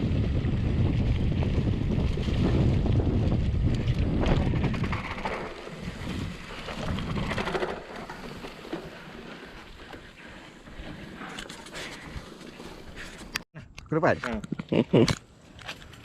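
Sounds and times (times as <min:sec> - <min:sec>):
wind buffeting microphone: 0:00.0 - 0:08.5
bike tyre noise on trail: 0:00.0 - 0:13.4.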